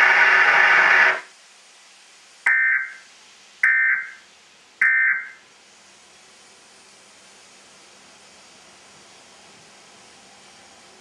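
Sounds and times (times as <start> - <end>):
digital data tone bursts: 2.5 - 3.0, 3.6 - 4.2.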